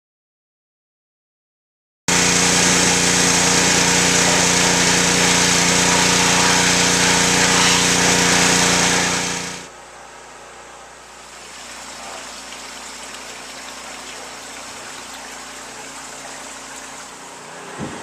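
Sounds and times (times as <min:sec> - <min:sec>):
small engine running: 0:02.1 - 0:09.7, 0:11.2 - 0:18.0.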